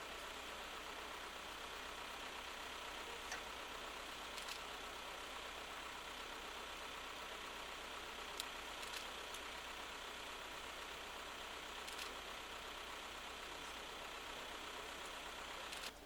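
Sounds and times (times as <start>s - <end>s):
heavy machinery engine idling: 0.0s - 16.0s.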